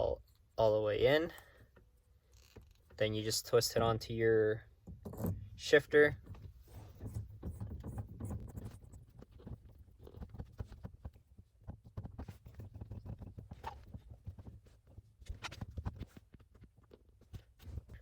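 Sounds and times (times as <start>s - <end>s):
small clicks and rubbing: 1.4s - 3.1s, 6.1s - 18.0s.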